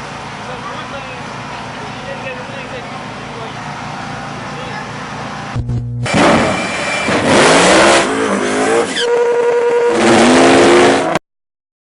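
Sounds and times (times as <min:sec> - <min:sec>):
drag car engine revving hard: 0:06.1 - 0:11.2.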